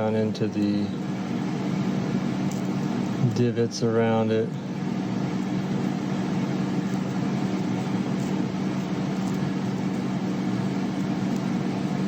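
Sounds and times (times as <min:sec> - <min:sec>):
mechanical hum: 0:00.0 - 0:12.0.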